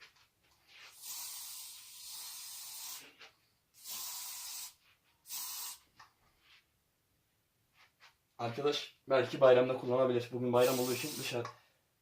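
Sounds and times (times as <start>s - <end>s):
hairspray can hissing: 0.7s - 5.9s, 10.6s - 11.5s.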